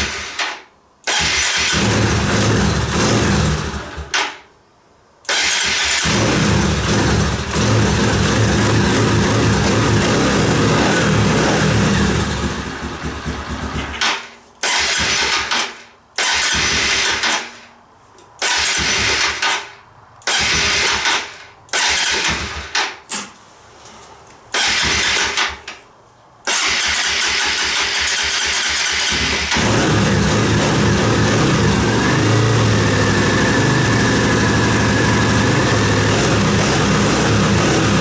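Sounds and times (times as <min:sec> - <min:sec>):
motorcycle engine running unevenly: 0:06.0 - 0:14.0, 0:29.2 - 0:38.0.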